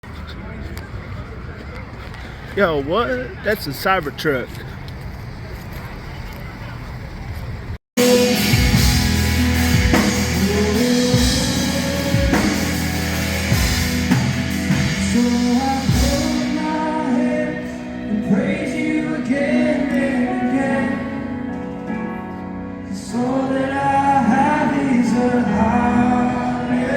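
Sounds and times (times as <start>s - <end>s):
drum kit: 8.0s - 17.0s
worship band music: 8.0s - 26.9s
people singing: 10.0s - 13.7s, 15.0s - 21.8s, 22.9s - 26.9s.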